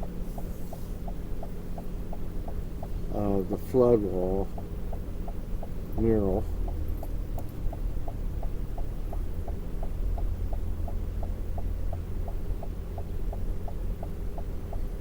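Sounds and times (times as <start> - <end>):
light ticking: 0.0 - 15.0
vehicle engine idling: 0.0 - 15.0.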